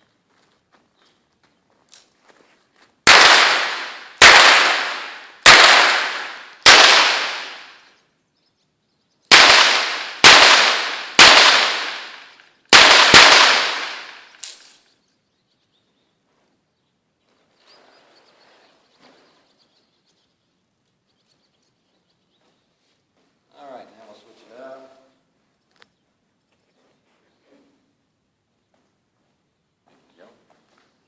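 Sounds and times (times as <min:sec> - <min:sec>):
pistol shots with echo: 0:03.1 - 0:07.9, 0:09.3 - 0:14.6.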